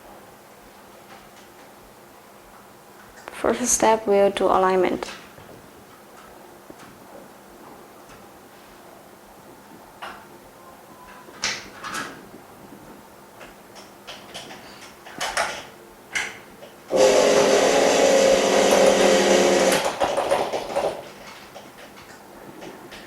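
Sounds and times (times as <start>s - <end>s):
machine motor humming: 16.9s - 20.4s.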